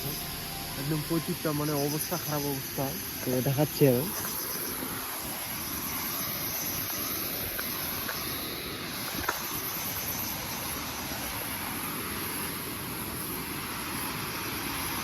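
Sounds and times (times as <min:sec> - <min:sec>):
high-pitched buzz: 0:00.0 - 0:06.7
waterfall rushing: 0:00.0 - 0:11.8.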